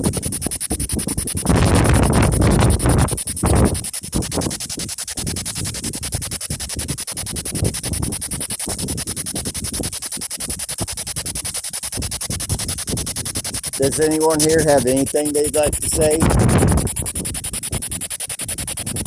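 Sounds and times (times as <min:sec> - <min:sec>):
rapid chopping radio static: 0:00.0 - 0:17.9.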